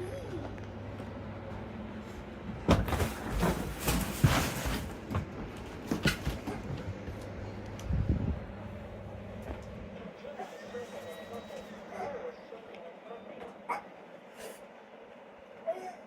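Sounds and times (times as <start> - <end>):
steady low hum: 0.0 - 16.0
objects knocking and rattling: 2.6 - 7.2.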